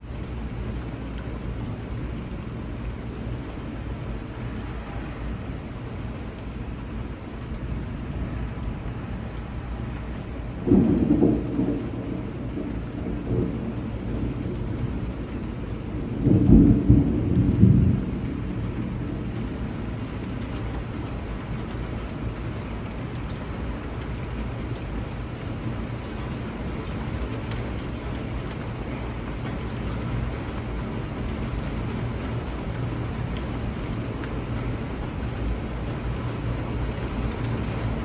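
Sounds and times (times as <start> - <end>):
heavy rain: 0.0 - 38.0
deep thunder clap: 10.5 - 21.0.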